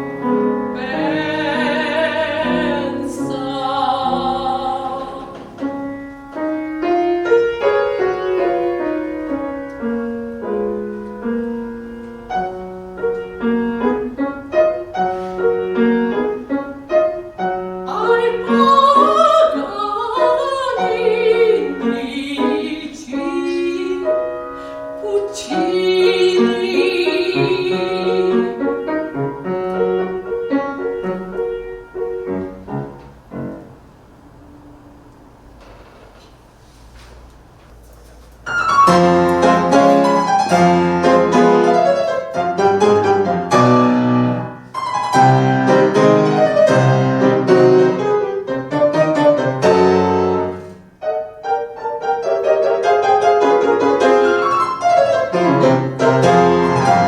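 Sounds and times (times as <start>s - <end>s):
piano accompaniment: 0.0s - 57.0s
soprano singing with vibrato: 0.3s - 5.8s, 17.8s - 28.9s.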